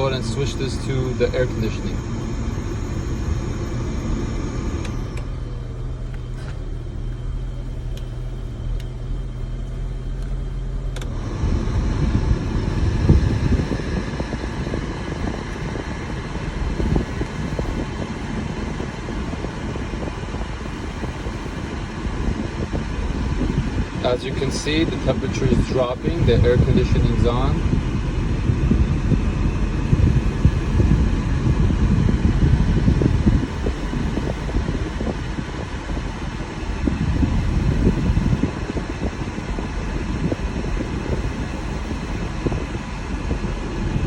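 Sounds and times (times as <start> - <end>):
sharp clicks of controls: 0.0 - 18.0
car engine idling: 0.0 - 44.0
climate control blower: 0.0 - 44.0.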